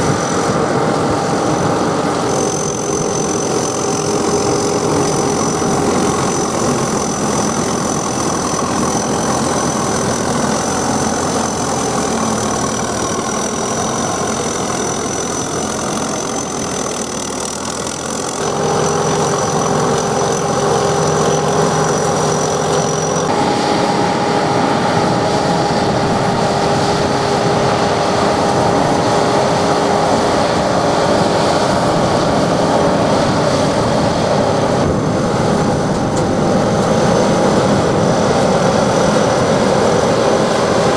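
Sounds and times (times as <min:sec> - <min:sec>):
combine harvester droning: 0:00.0 - 0:40.9.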